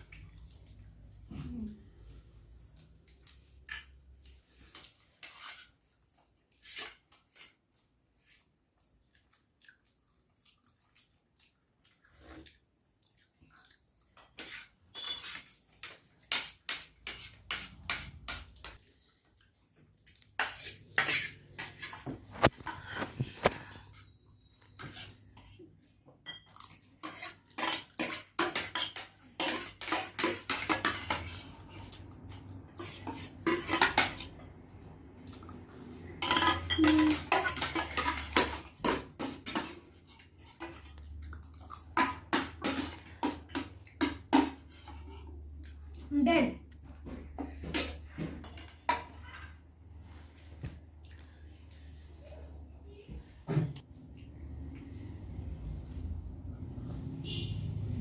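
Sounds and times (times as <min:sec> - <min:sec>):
cutlery clinking against dish: 0:36.2 - 0:39.7.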